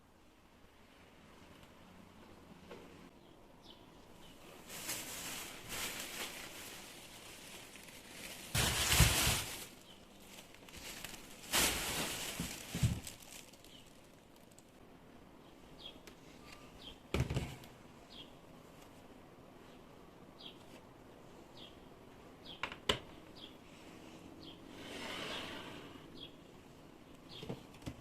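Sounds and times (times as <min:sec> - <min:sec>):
rustling and handling noise: 0:04.1 - 0:14.8, 0:18.6 - 0:22.3.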